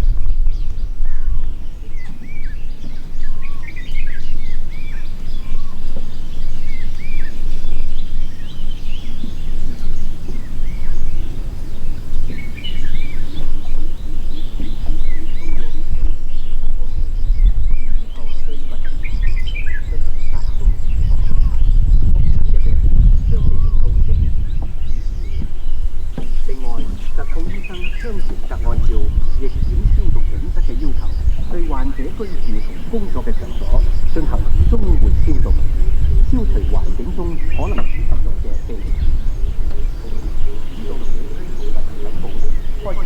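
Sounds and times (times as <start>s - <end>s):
loud uneven low rumble: 0.0s - 43.0s
small birds chirping: 0.0s - 43.0s.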